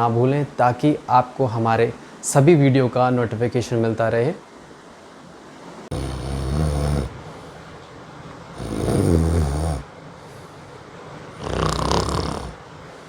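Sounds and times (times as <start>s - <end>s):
person snoring: 5.9s - 7.3s, 8.6s - 9.9s, 11.4s - 12.6s.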